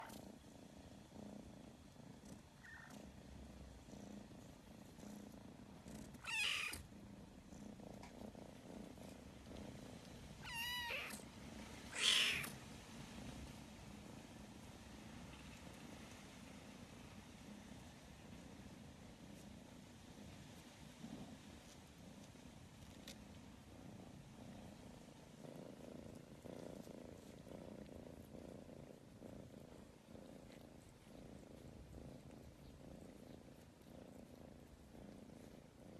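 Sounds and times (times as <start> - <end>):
cat purring: 0.0 - 35.9
cat meowing: 6.2 - 6.8, 10.4 - 11.2, 11.9 - 12.5.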